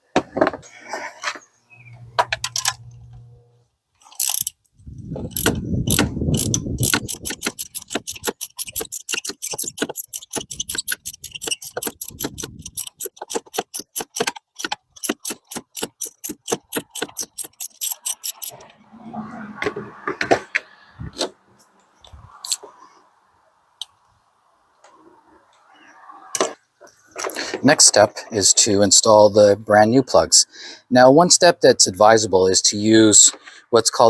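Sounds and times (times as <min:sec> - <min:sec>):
rustling scrape: 0:00.6 - 0:01.5
ratchet wrench clicking: 0:04.1 - 0:04.6, 0:05.3 - 0:18.6.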